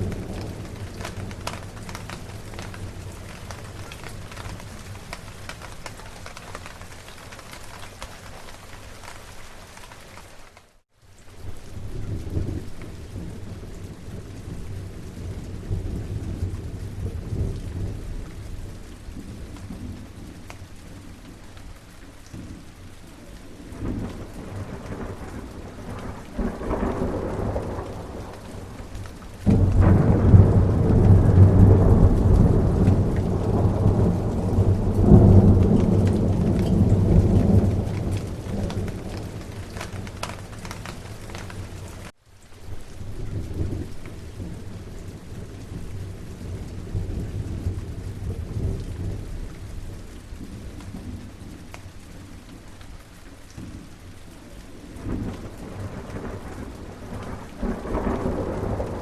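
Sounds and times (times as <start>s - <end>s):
thunder rumbling: 0.0s - 8.8s, 11.5s - 21.4s, 23.4s - 42.1s, 54.8s - 59.0s
steady rain: 0.0s - 59.0s.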